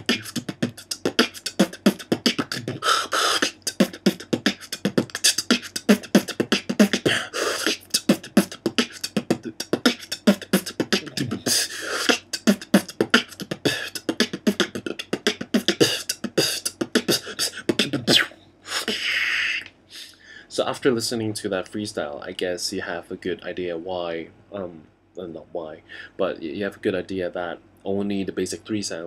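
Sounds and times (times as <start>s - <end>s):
vocal beatbox drum sounds: 0.0s - 19.7s.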